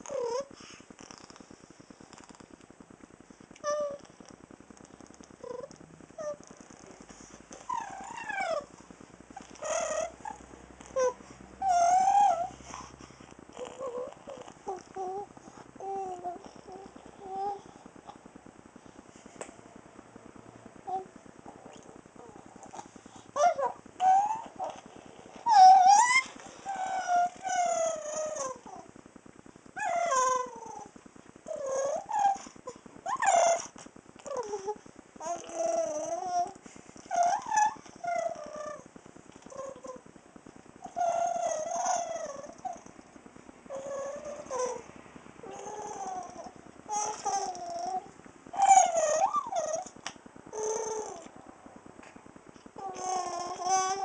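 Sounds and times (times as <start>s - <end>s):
high-pitched vocal whines and squeals: 5.3s - 18.1s, 20.8s - 29.0s, 29.8s - 40.1s, 40.8s - 43.0s, 43.7s - 51.4s, 52.8s - 54.0s.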